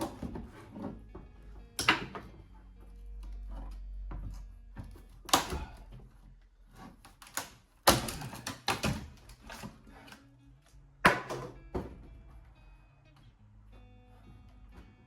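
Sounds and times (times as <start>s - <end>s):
wooden knocks and clunks: 0.0s - 2.5s, 3.4s - 6.9s, 11.0s - 12.4s.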